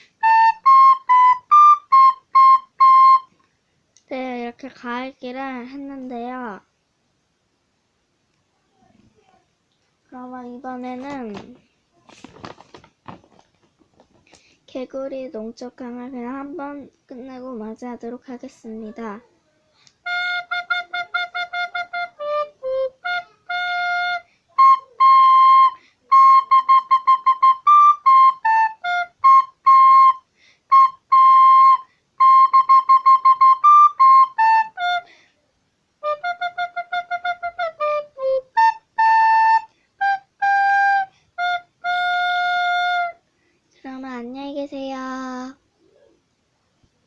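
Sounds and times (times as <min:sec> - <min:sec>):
recorder melody: 0:00.0 - 0:03.4, 0:20.0 - 0:35.1, 0:36.0 - 0:43.2.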